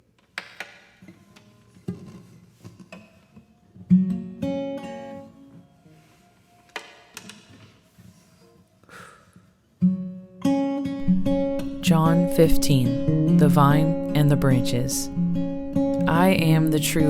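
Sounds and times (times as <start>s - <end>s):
acoustic guitar strummed chords: 3.0s - 6.2s, 9.8s - 17.0s.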